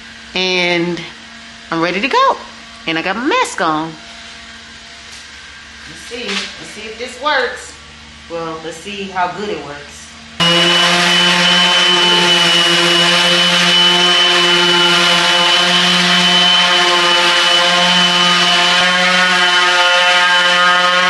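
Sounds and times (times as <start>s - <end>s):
orbital sander on wood: 10.4s - 21.0s.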